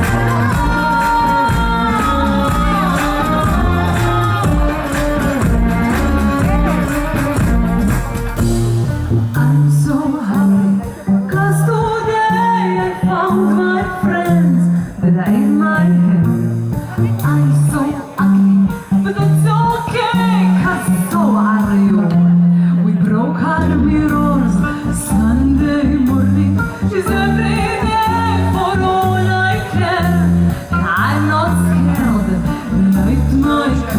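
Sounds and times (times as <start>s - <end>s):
person singing: 0.0s - 8.5s, 9.2s - 33.9s
stepping bass line: 0.0s - 19.6s
guitar: 0.0s - 33.9s
live band playing: 0.0s - 33.9s.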